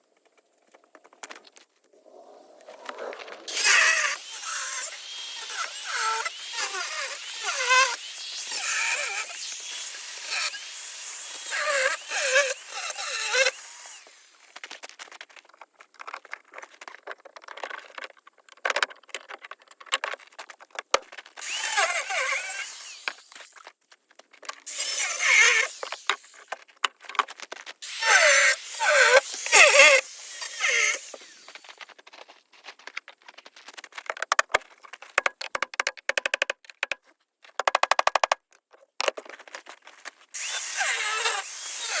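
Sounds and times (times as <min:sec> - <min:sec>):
tool squealing on metal: 0:27.8 - 0:31.7.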